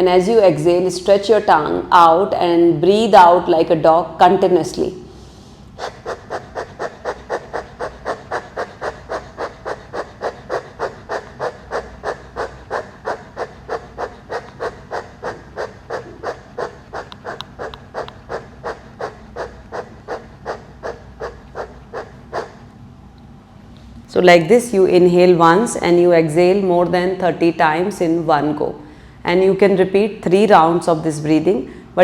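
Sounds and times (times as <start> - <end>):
person panting rapidly: 5.2 - 22.6.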